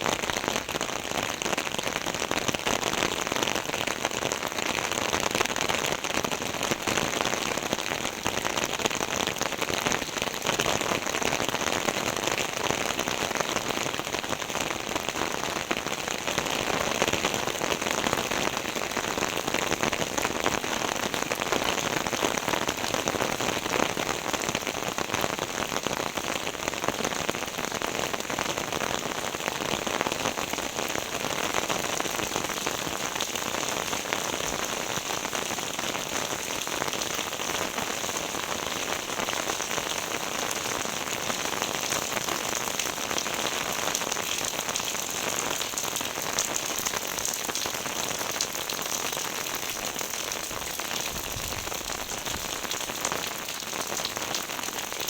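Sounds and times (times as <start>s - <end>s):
heavy rain falling: 0.0s - 55.0s.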